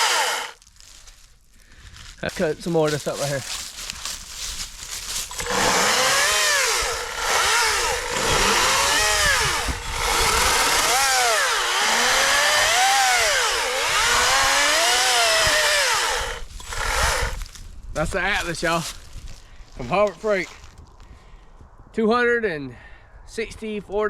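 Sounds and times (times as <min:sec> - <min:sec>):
chainsaw cutting wood: 0:00.0 - 0:00.6, 0:05.2 - 0:17.6.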